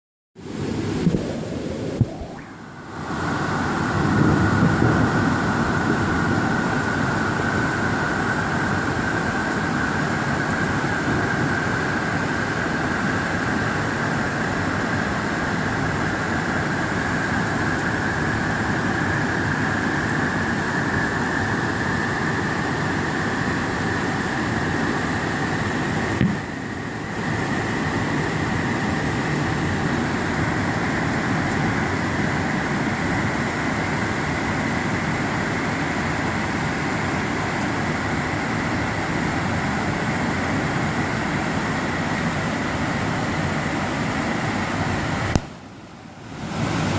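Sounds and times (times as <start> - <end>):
thin rising whine: 0.4 - 13.6
vehicle running noise: 1.0 - 46.9.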